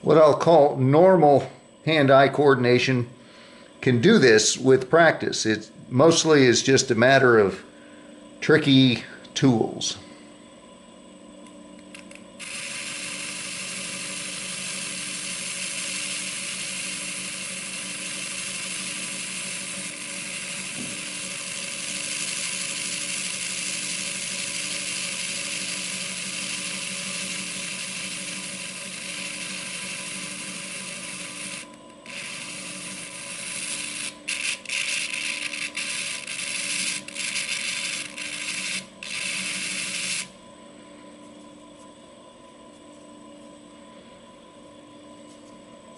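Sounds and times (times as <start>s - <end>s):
buffer motor humming: 3.1s - 45.9s
pipe stem grinding on wheel: 26.4s - 40.3s.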